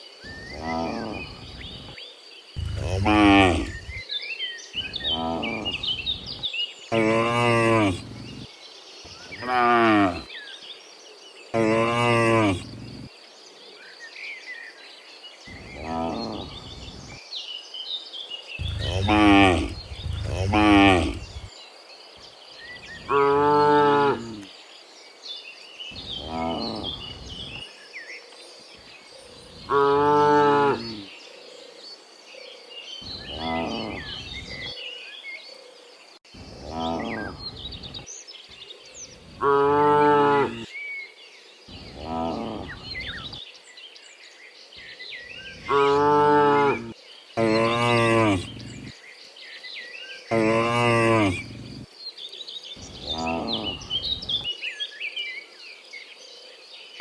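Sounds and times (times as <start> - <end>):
faint bird chirps: 0.0 - 10.7, 18.3 - 21.5
cows mooing: 2.6 - 4.0, 6.9 - 8.4, 9.4 - 10.3, 11.6 - 13.1, 18.6 - 21.5, 45.7 - 48.9, 50.3 - 51.8.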